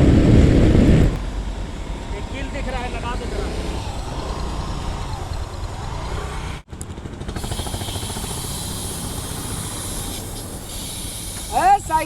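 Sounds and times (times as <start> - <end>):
wind on microphone: 0.0 - 1.3
motorcycle engine rumble: 0.0 - 12.0.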